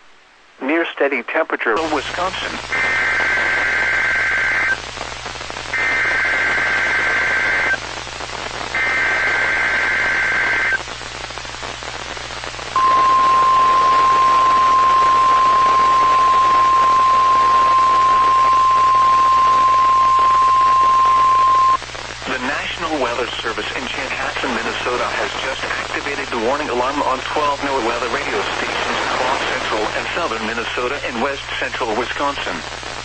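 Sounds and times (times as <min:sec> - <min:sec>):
radio hiss: 0:00.0 - 0:33.0
steady warning alarm tone: 0:12.8 - 0:21.8.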